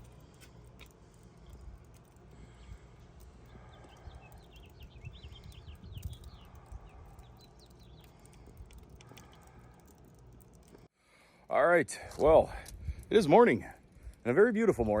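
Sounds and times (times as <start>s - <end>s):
low steady rumble: 0.0s - 10.9s
small birds chirping: 0.0s - 10.9s.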